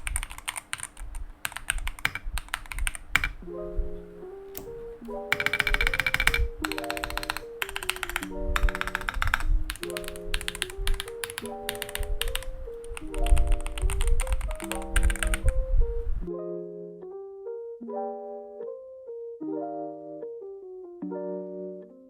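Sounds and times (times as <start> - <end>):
mechanical keyboard typing: 0.0 - 3.4, 4.5 - 15.6.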